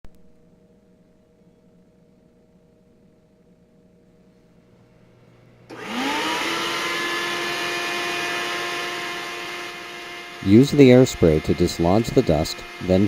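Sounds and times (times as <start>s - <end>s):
vacuum cleaner motor whining: 5.7s - 13.0s.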